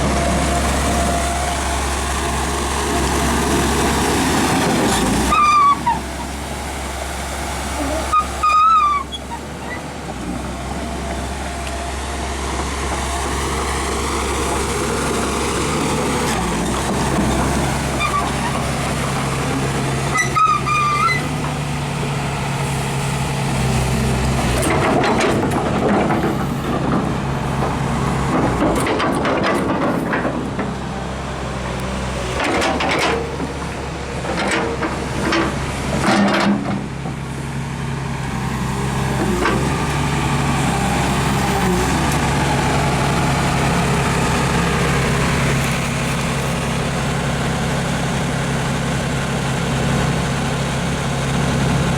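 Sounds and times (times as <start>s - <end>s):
diesel engine running: 0.0s - 51.9s
high squeal: 5.3s - 6.3s, 8.0s - 9.9s, 20.1s - 21.3s.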